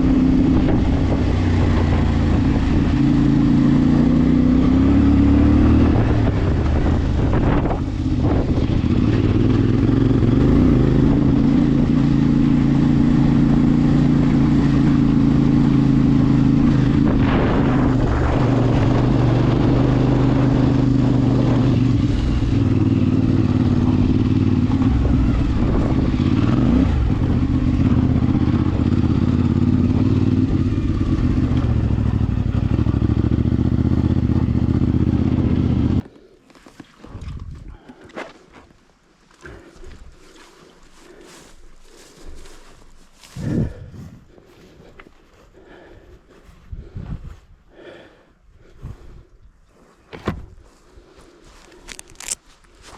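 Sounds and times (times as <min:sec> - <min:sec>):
motorcycle engine running: 0:00.0 - 0:36.1, 0:40.9 - 0:46.1.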